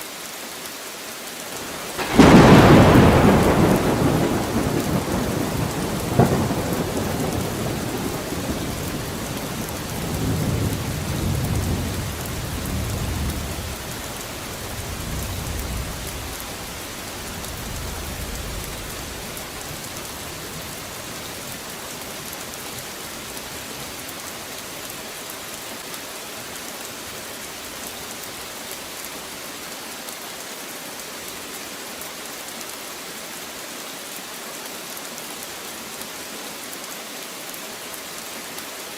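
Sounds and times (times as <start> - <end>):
steady rain: 0.0 - 38.9
thunder rumbling: 1.9 - 21.6.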